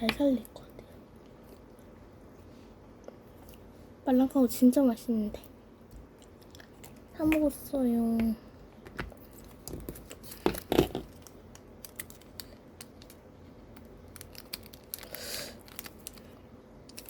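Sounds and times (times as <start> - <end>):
paper and plastic crinkling: 9.2 - 13.2, 13.8 - 17.0.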